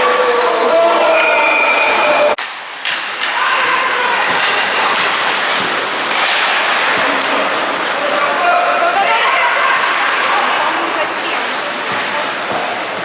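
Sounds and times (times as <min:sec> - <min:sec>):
thuds and knocks from hockey play: 0:04.2 - 0:07.7.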